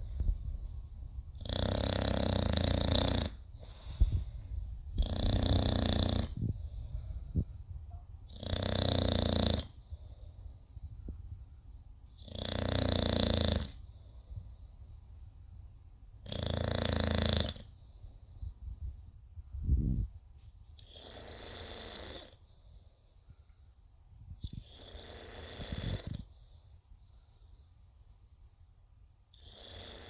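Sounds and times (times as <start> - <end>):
dog snoring: 1.4 - 3.8, 4.9 - 7.0, 8.3 - 9.9, 12.2 - 13.8, 16.2 - 17.7, 20.8 - 22.4, 24.6 - 26.3, 29.3 - 30.0
dog breathing: 3.2 - 7.5.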